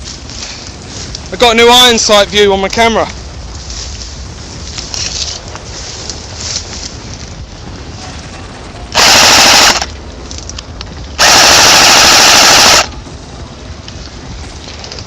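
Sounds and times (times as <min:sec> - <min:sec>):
airsoft rifle firing full auto: 0:09.0 - 0:09.9, 0:11.2 - 0:12.9.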